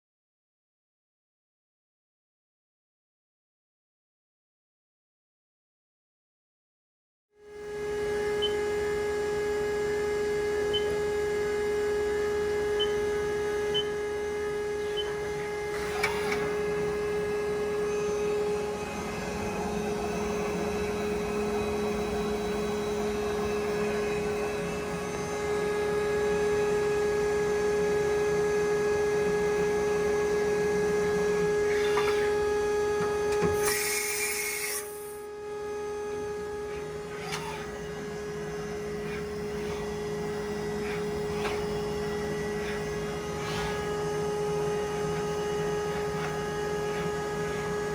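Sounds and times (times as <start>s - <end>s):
milling machine whining: 7.5s - 47.9s
loud hiss: 33.6s - 35.1s.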